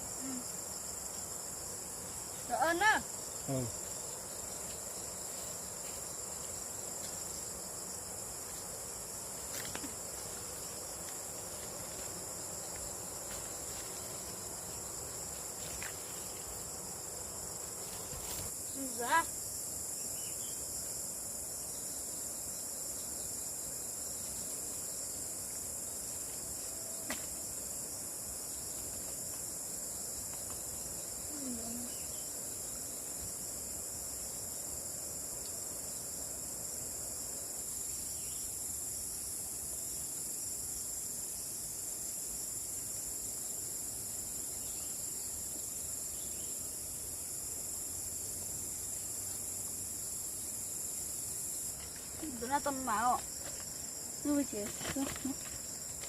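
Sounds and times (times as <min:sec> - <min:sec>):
insects droning: 0:00.0 - 0:56.0.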